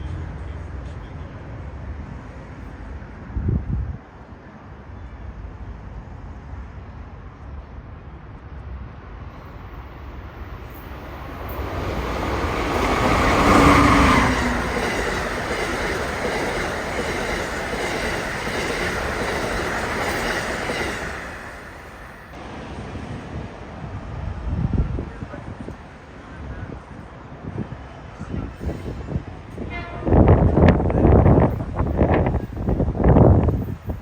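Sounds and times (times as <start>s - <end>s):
passenger train passing: 0.0s - 34.0s
wheels clattering on rails: 10.3s - 22.3s.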